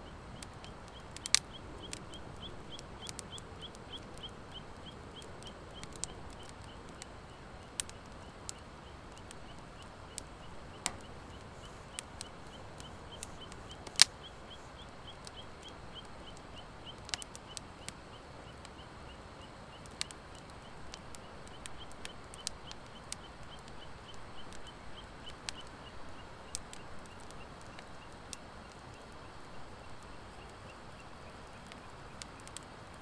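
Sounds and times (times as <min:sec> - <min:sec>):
wood fire crackling and popping: 0:00.2 - 0:18.8, 0:19.7 - 0:33.0.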